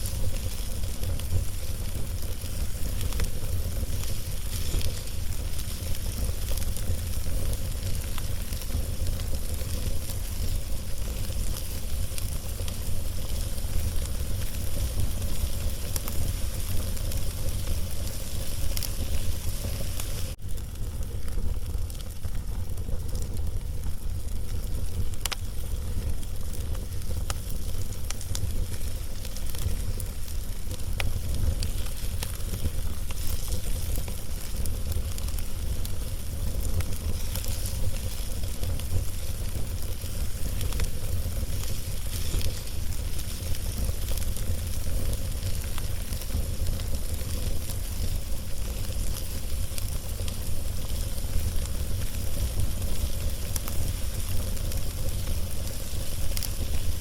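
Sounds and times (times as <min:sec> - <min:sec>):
log fire crackling and popping: 0:00.0 - 0:57.0.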